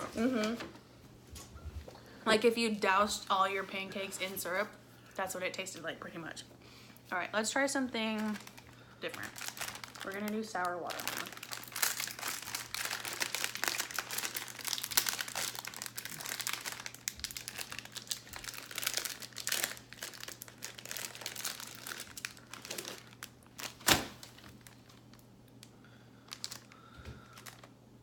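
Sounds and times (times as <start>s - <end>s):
plastic packaging crinkling: 8.0s - 27.8s.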